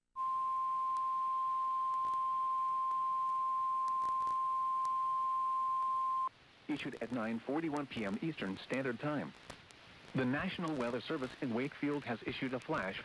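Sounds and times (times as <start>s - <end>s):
steady electronic warning tone: 0.2s - 6.3s.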